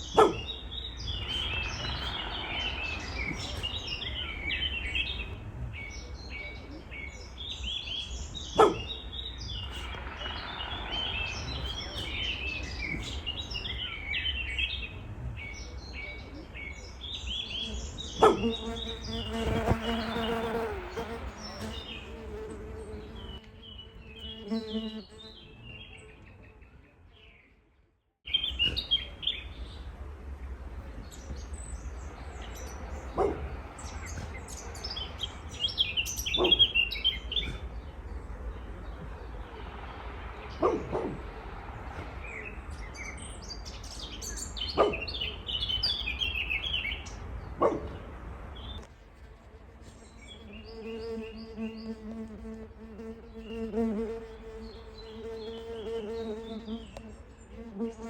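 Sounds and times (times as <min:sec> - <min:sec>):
birds chirping: 0:00.0 - 0:48.9, 0:49.8 - 0:58.0
dog barking: 0:00.1 - 0:00.6, 0:08.5 - 0:09.0, 0:18.2 - 0:18.6, 0:33.1 - 0:33.6, 0:36.3 - 0:36.8, 0:40.6 - 0:41.3, 0:44.7 - 0:45.2, 0:47.6 - 0:48.0
fly buzzing: 0:18.4 - 0:25.3.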